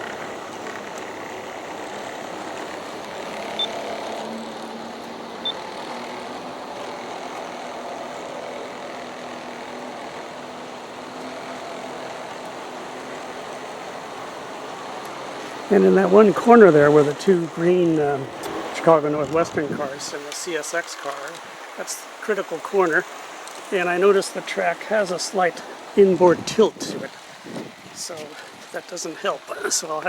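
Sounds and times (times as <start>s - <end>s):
faint motor hum: 0.0s - 20.0s
metal wheels rolling on rail: 0.0s - 21.5s.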